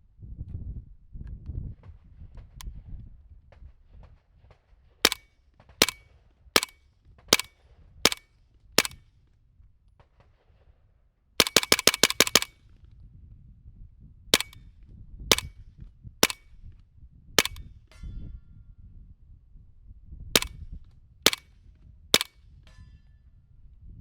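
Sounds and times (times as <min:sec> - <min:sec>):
suppressed gunshots: 0:05.8 - 0:06.0, 0:06.6 - 0:07.5, 0:11.4 - 0:12.5, 0:14.4 - 0:14.6, 0:16.2 - 0:16.4, 0:17.4 - 0:17.6.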